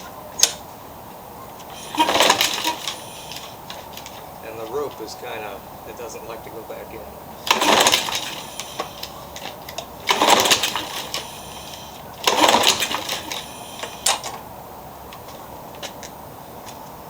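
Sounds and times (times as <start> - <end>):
recoil starter rattling crank: 1.6 - 5.5, 6.9 - 14.6.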